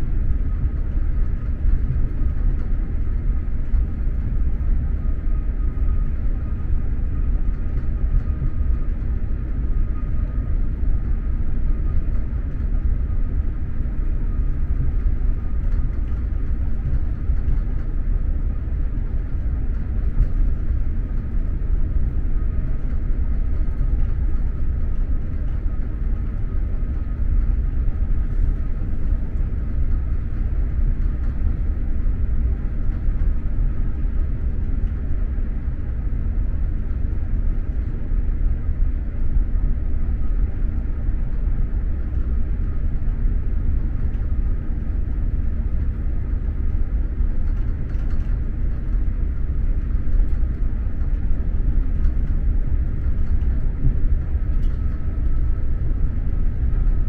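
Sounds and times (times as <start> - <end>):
train rumbling at speed: 0.0 - 57.0.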